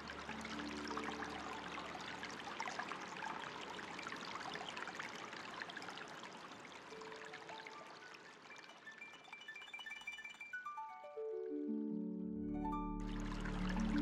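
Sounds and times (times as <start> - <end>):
water trickling and splashing: 0.0 - 10.8, 13.0 - 14.0
soft held musical notes: 10.5 - 14.0.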